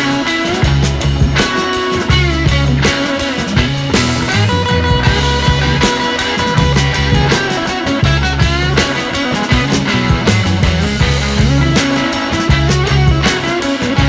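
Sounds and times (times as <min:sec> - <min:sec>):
rock music with electric guitar: 0:00.0 - 0:14.0.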